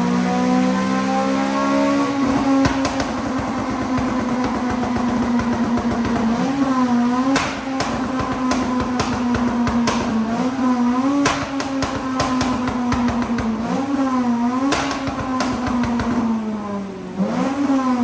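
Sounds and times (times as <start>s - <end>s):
car engine at high revs: 0.0s - 18.0s
exhaust crackling pops: 2.1s - 16.5s.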